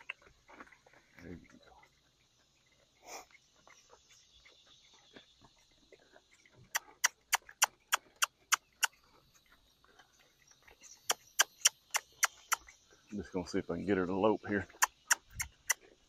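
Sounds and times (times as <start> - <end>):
tongue clicks: 6.0 - 9.6, 10.6 - 13.1, 14.6 - 16.0.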